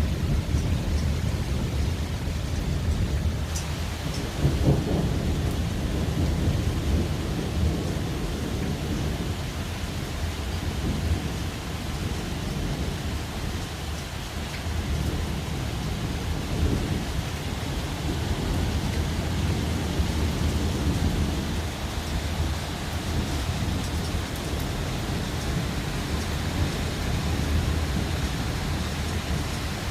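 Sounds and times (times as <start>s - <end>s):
steady rain: 0.0s - 29.9s
thunder rumbling: 0.0s - 29.9s.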